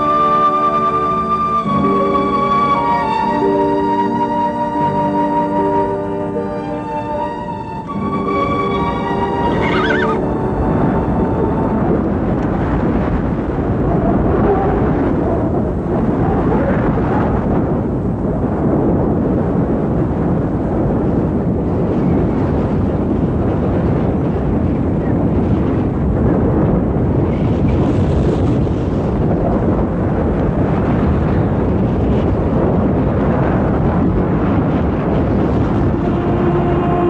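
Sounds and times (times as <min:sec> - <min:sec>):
music: 0:00.0 - 0:12.4, 0:35.4 - 0:37.0
strong wind blowing: 0:00.0 - 0:37.0.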